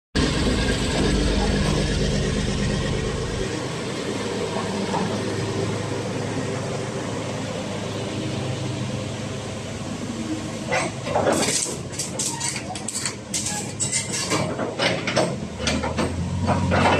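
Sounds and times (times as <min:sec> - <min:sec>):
excavator diesel engine running: 0:00.2 - 0:16.9
metallic clanks and clicks: 0:10.7 - 0:16.9.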